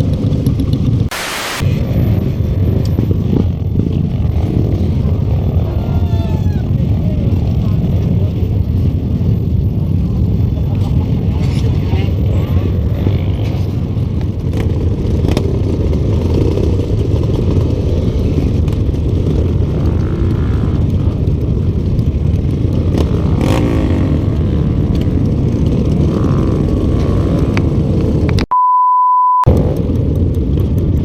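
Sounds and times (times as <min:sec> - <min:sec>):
steady beep tone: 0:01.1 - 0:01.7, 0:28.5 - 0:29.5
motorcycle engine rumbling: 0:13.2 - 0:28.3.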